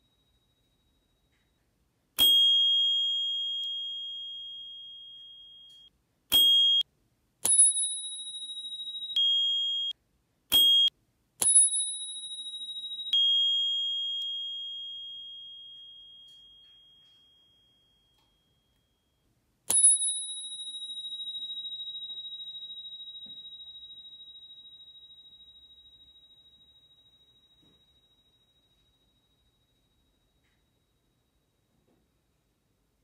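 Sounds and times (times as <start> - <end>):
bicycle bells ringing: 2.2 - 6.8, 10.7 - 30.4.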